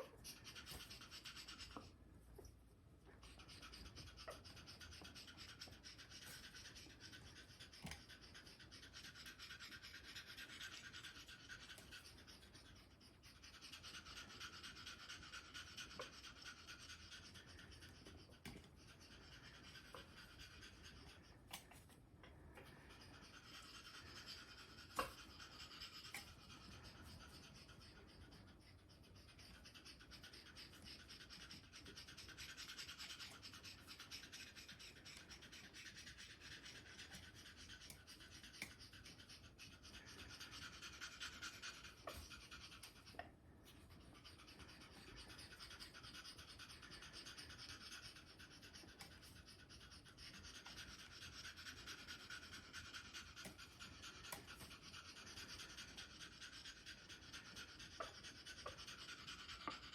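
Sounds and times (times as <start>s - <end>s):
parrot panting: 0.0s - 59.9s.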